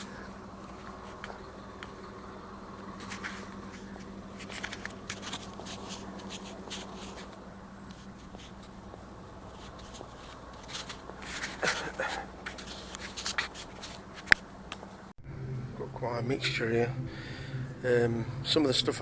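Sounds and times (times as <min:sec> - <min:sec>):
clothes rustling: 0:00.0 - 0:15.1
low hum: 0:00.0 - 0:19.0
shopping bag rustling: 0:02.9 - 0:14.4.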